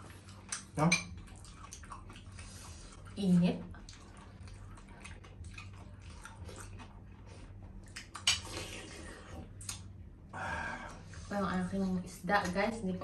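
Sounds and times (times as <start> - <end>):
chewing crispy fried food: 0.0 - 10.0.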